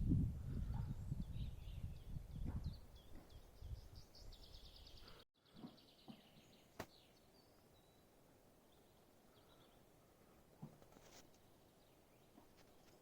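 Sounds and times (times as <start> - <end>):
faint bird chirps: 0.6 - 10.4.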